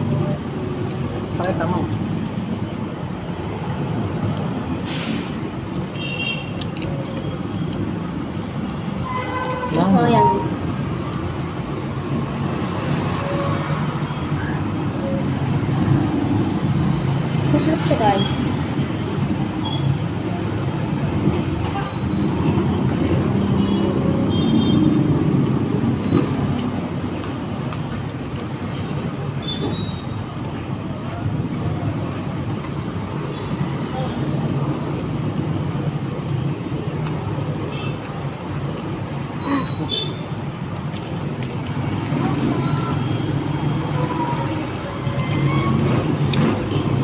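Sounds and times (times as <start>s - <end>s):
rumbling vehicle noise: 0.0s - 47.0s
short hiss: 4.8s - 5.4s.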